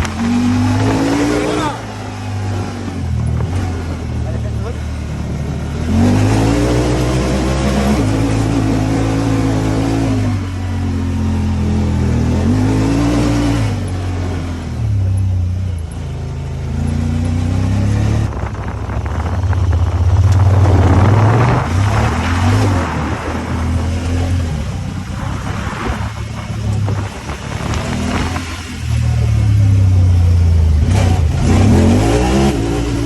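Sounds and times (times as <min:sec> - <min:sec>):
engine revving: 0:00.0 - 0:33.0.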